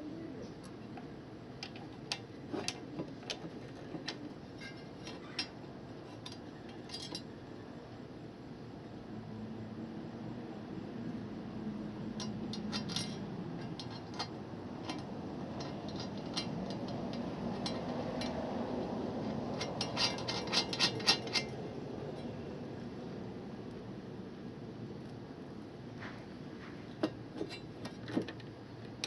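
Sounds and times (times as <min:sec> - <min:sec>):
metal tools clinking: 0:01.6 - 0:07.3, 0:12.2 - 0:18.4, 0:19.5 - 0:21.6.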